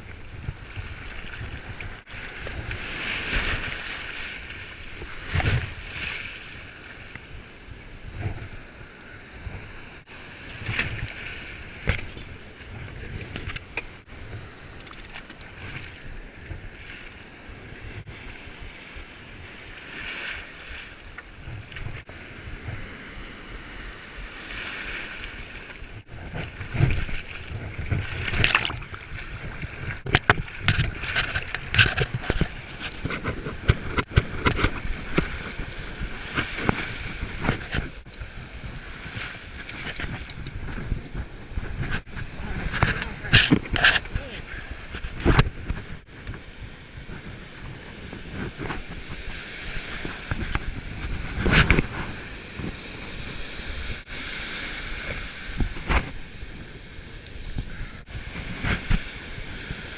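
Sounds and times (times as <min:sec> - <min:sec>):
wind buffeting microphone: 0:00.0 - 0:05.9, 0:25.4 - 0:59.9
sea waves washing: 0:00.0 - 0:59.9.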